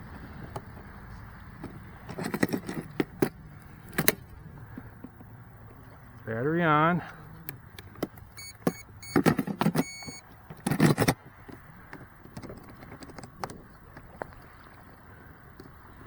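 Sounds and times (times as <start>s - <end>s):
handling noises: 1.2s - 6.3s, 7.1s - 14.4s
high electronic startup beeps: 8.4s - 10.2s.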